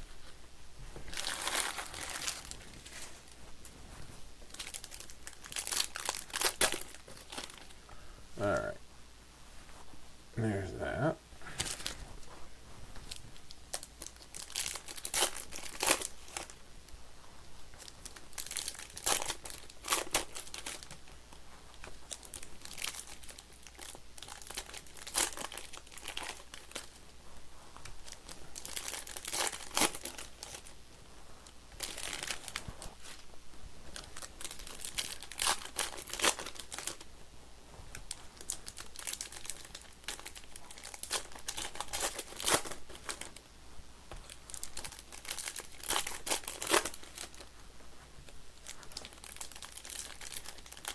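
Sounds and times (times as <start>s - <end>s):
foil wrappers tearing and crinkling: 1.1s - 3.4s, 4.5s - 7.7s, 11.5s - 12.0s, 13.1s - 16.6s, 17.8s - 21.1s, 21.8s - 27.0s, 28.0s - 30.7s, 31.8s - 33.2s, 34.0s - 37.1s, 38.1s - 43.4s, 44.3s - 47.5s, 48.6s - 50.9s.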